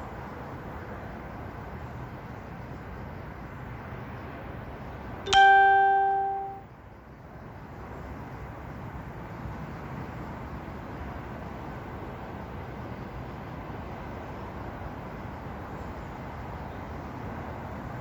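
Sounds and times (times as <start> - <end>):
loud ding tone: 5.3 - 6.6.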